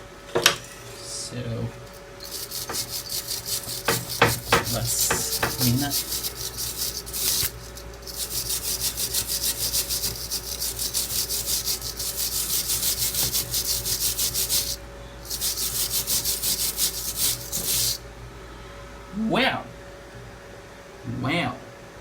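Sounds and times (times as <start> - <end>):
tool rasping on metal: 1.8 - 18.0.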